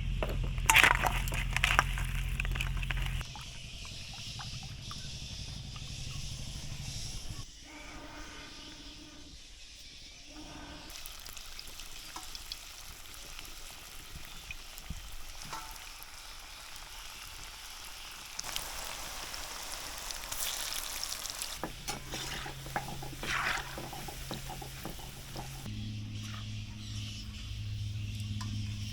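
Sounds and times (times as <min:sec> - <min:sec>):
stirring in a pan: 0:10.9 - 0:16.6, 0:18.3 - 0:25.7
food sizzling in oil: 0:10.9 - 0:25.7.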